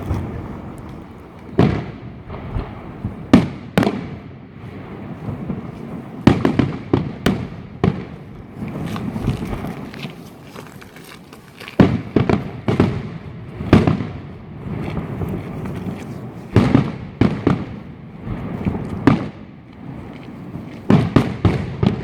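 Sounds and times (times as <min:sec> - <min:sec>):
fireworks banging: 0:00.0 - 0:10.8, 0:11.7 - 0:22.0
distant fireworks rumble: 0:00.0 - 0:22.0.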